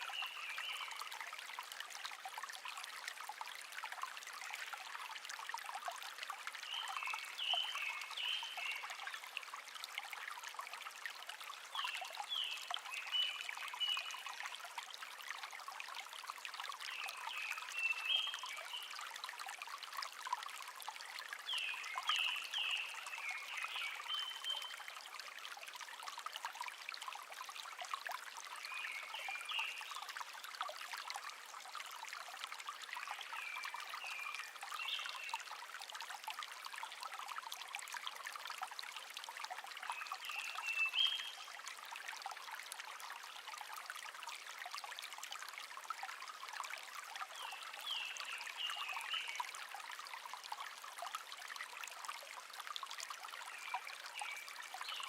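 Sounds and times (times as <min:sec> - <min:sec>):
stream babbling: 0:00.0 - 0:55.0.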